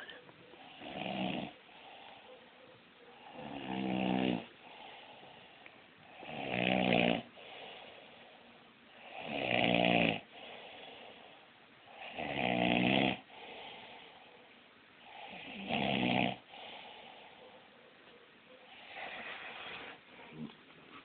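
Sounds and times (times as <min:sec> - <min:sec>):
faint breathing: 0:00.0 - 0:06.3, 0:07.2 - 0:09.2, 0:10.2 - 0:12.1, 0:13.2 - 0:15.5, 0:16.4 - 0:20.6
man snoring: 0:00.7 - 0:01.6, 0:03.2 - 0:04.9, 0:06.0 - 0:07.8, 0:09.0 - 0:10.8, 0:11.9 - 0:13.7, 0:15.1 - 0:16.8.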